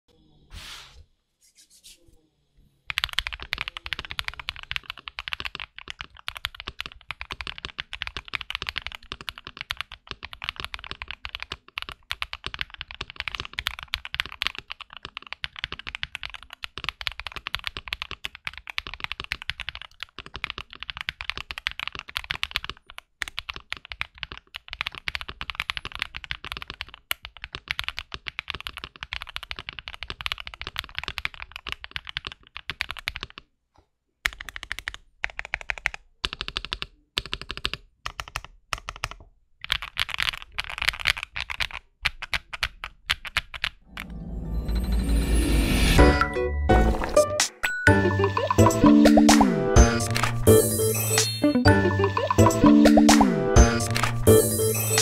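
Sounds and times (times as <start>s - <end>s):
fast mechanical keyboard typing: 2.9s - 33.4s, 34.2s - 44.1s, 48.4s - 50.5s, 52.1s - 55.0s.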